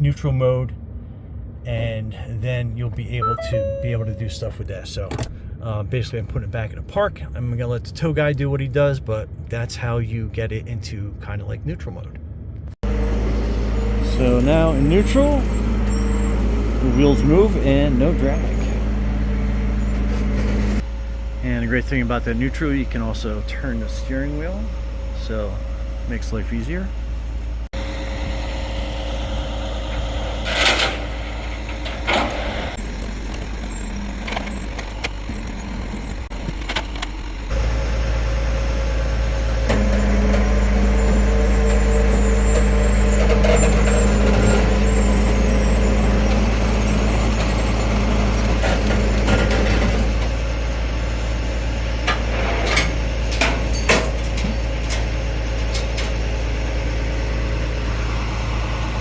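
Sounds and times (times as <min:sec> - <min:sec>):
truck engine running: 0:12.8 - 0:59.0.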